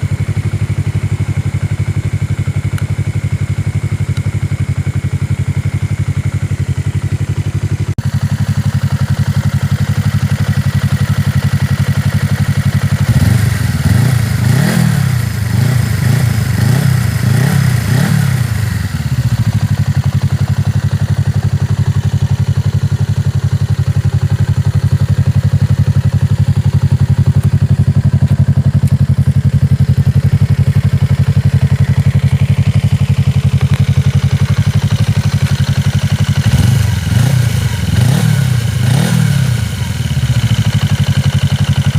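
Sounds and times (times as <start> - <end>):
motorcycle engine idling and revving: 0.0 - 41.9.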